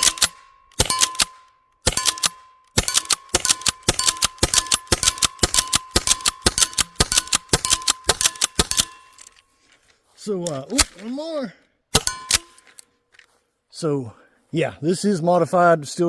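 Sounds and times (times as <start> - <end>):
launcher shots: 0.0 - 9.1, 11.9 - 12.6
rounds hitting steel target: 0.0 - 9.2, 11.9 - 12.6.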